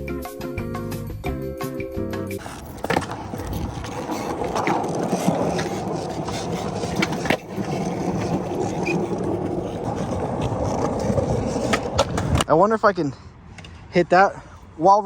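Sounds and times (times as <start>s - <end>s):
skateboard wheels rolling on pavement: 1.6s - 12.7s
skateboard clacks: 2.4s - 12.5s.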